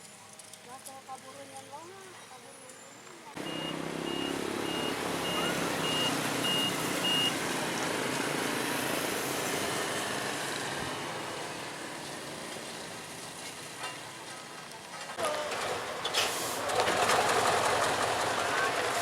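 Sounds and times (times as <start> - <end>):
paving machinery rushing noise: 2.4 - 19.0
reversing alarm beeping: 3.4 - 7.4.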